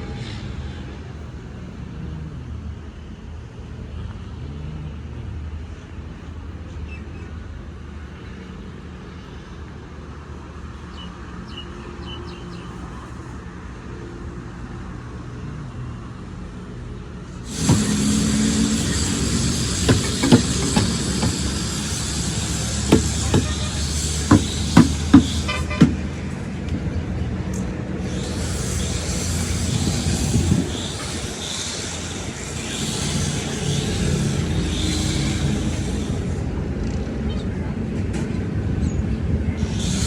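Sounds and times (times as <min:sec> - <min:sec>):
large engine rumbling: 0:17.1 - 0:40.0
loud hissing clattering noise: 0:17.4 - 0:26.3, 0:27.6 - 0:36.5, 0:39.6 - 0:40.0.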